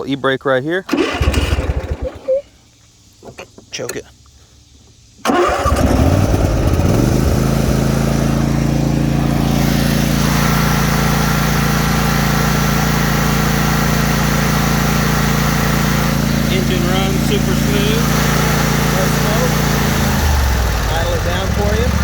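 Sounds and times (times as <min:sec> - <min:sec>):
mower engine cranking and running: 0:00.9 - 0:02.5, 0:05.2 - 0:22.0.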